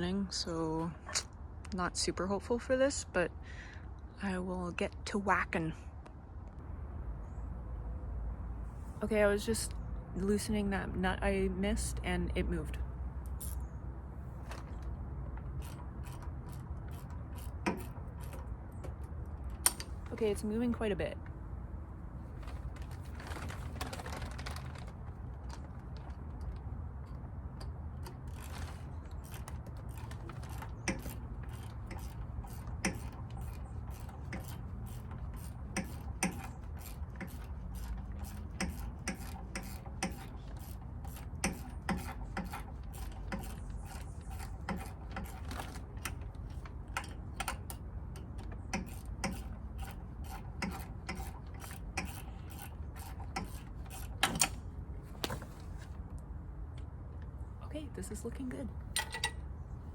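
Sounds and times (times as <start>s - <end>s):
low steady hum: 0.0s - 59.9s
ratchet wrench clicking: 29.2s - 45.3s.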